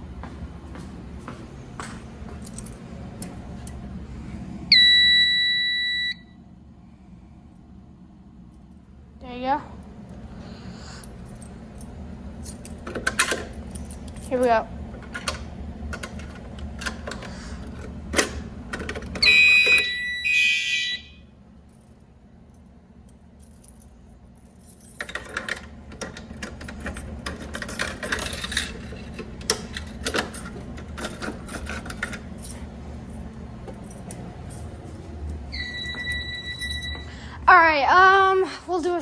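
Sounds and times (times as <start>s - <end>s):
fire alarm blasts: 4.7s - 6.4s, 19.2s - 21.3s, 35.5s - 37.2s.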